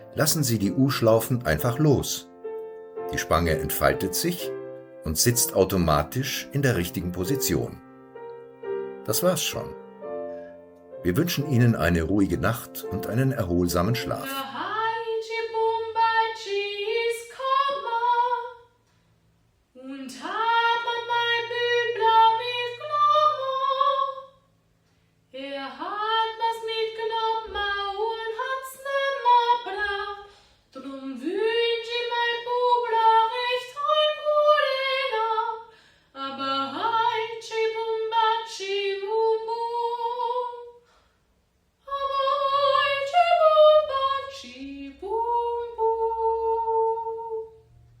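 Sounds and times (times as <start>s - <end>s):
woman singing: 14.2s - 18.8s, 19.8s - 24.4s, 25.3s - 40.8s, 41.8s - 47.7s.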